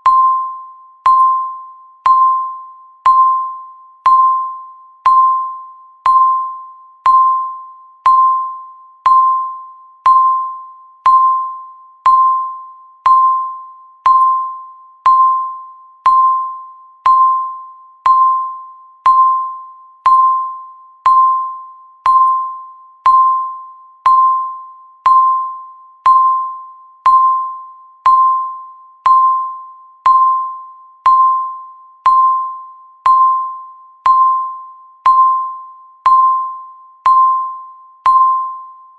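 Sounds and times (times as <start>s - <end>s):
countdown timer beeps: 0.0s - 38.9s.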